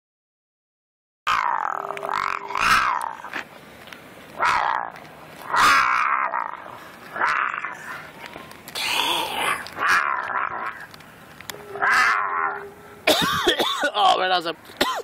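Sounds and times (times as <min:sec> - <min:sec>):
animal coughing raspily: 0:13.0 - 0:14.0, 0:14.8 - 0:15.0.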